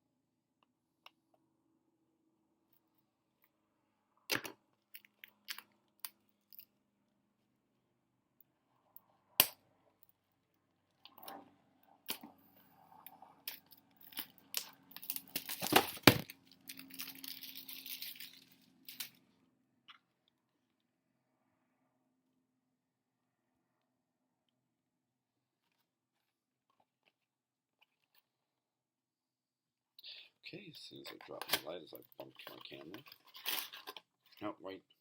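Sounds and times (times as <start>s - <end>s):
packaging tearing and crinkling: 13.5s - 19.1s.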